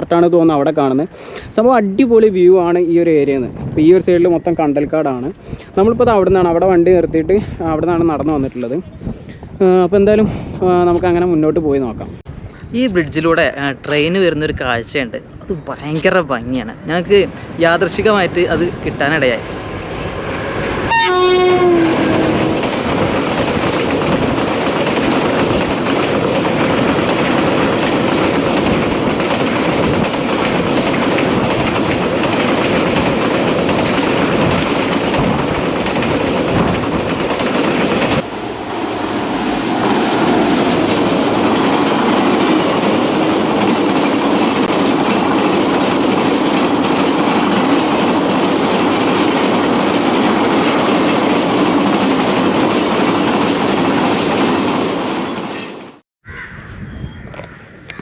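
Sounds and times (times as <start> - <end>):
train horn: 20.9 - 22.6
train wagons clickety-clack: 20.9 - 38.3, 39.8 - 56.0.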